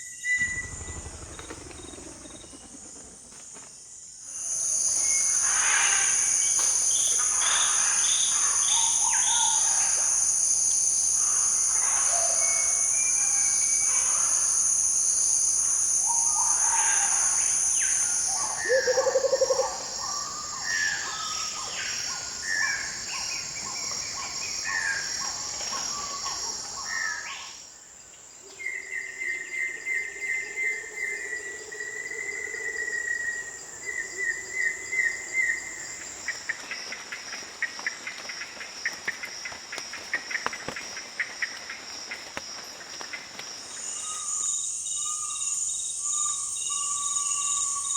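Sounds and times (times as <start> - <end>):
high-pitched insect drone: 0.0 - 27.6, 43.7 - 47.9
low pulsing trill: 0.4 - 3.2.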